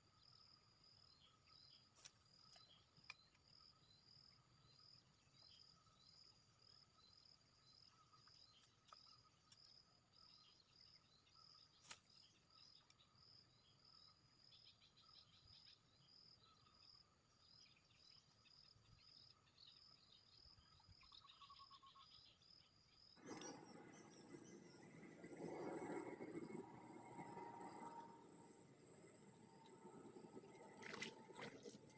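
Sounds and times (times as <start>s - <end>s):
insects chirping: 0.0s - 31.9s
bird chirps: 6.9s - 31.9s.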